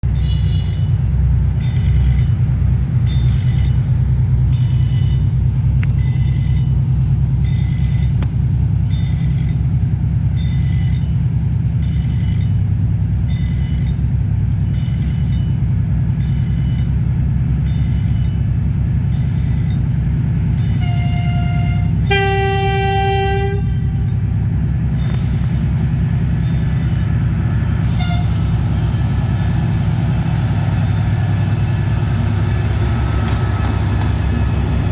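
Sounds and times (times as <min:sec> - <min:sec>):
freight train rumble: 0:00.0 - 0:34.9
crossing signal beeps: 0:00.1 - 0:12.6, 0:13.3 - 0:15.6, 0:16.2 - 0:18.5, 0:20.6 - 0:34.9
train horn blast: 0:20.7 - 0:24.5, 0:27.7 - 0:34.9.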